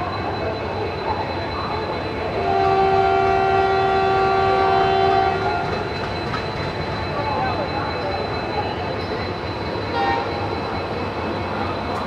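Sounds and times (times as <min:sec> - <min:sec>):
train horn blast: 0:02.4 - 0:05.7.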